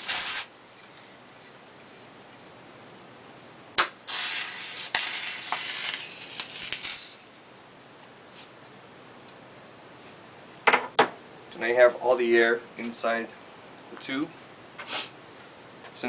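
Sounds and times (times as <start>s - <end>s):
inflator hissing: 4.1s - 7.2s.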